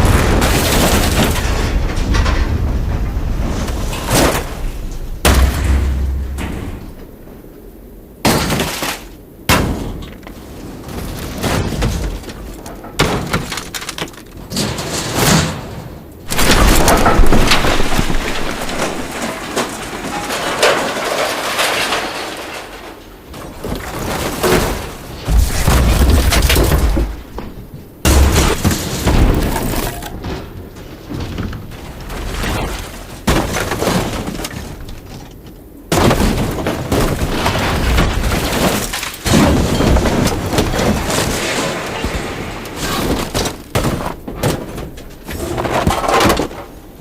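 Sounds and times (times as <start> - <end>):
scrap metal crashing onto ground: 0.0 - 7.2, 11.4 - 31.4
metal debris rattling: 0.0 - 7.4, 11.2 - 35.0.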